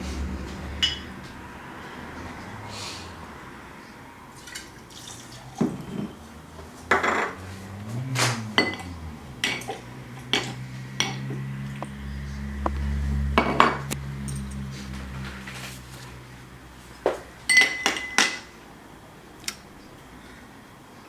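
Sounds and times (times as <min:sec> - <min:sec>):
bar tools clinking against glassware: 0:00.8 - 0:01.1, 0:05.6 - 0:06.2, 0:06.9 - 0:07.4, 0:08.6 - 0:11.3, 0:17.5 - 0:18.5.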